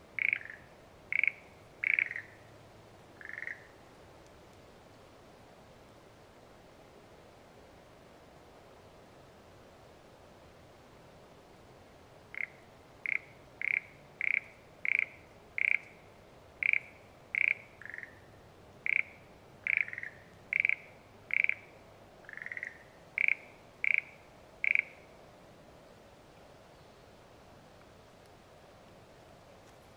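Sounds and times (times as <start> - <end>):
frog croaking: 0.2 - 2.5, 3.2 - 3.8, 12.3 - 16.0, 16.6 - 25.1.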